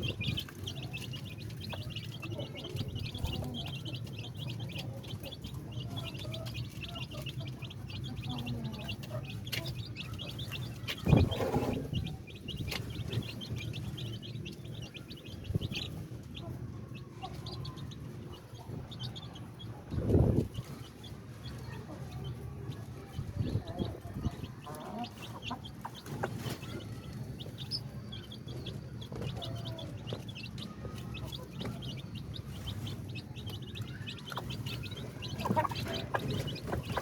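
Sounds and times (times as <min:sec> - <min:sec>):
chickens clucking: 0:00.0 - 0:37.0.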